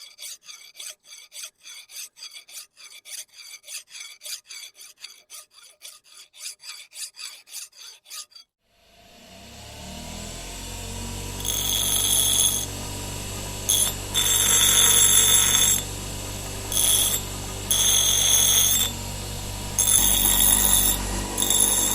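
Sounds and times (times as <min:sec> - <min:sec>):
low hum: 0:08.7 - 0:21.9.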